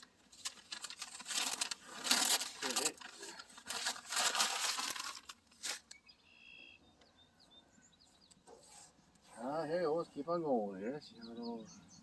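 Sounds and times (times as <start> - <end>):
masking tape peeling and crinkling: 0.0 - 6.0
faint bird chirps: 5.9 - 12.0.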